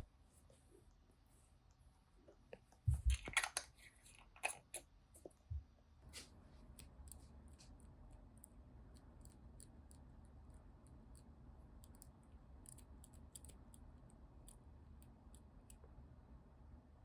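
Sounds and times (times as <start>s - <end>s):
light clicks of containers handled: 2.3s - 5.4s.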